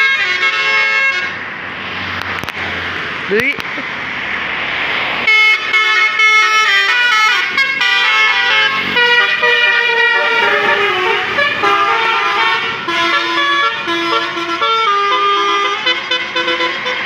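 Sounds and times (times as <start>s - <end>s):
bus musical air horn playing a tune: 0.0s - 1.4s, 5.3s - 17.0s.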